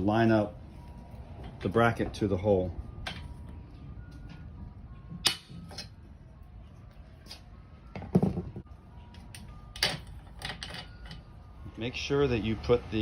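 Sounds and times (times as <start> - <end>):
metal clanks and clicks: 9.3 - 11.3.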